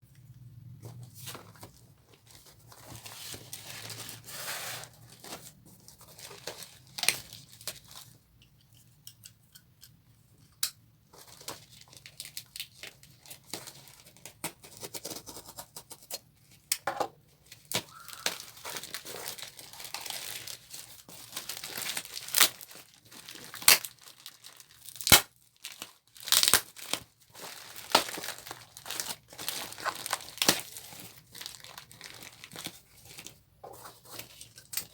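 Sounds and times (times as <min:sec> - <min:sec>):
packaging tearing and crinkling: 0:17.5 - 0:33.3.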